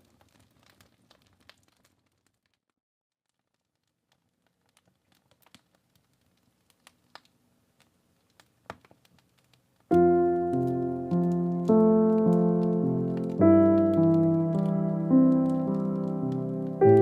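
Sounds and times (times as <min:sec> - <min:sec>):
fireplace crackling: 0:00.0 - 0:02.7, 0:03.3 - 0:17.0
piano chords: 0:09.9 - 0:17.0.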